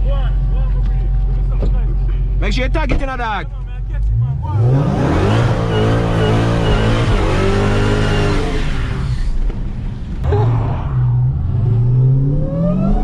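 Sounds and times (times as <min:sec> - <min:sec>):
car engine accelerating: 0:03.7 - 0:13.0.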